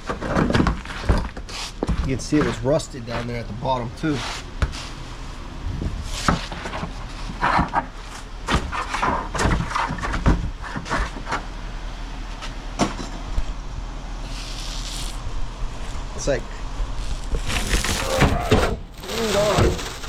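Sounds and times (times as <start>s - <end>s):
sheet metal peeling from foam: 14.3s - 15.2s, 16.9s - 20.0s.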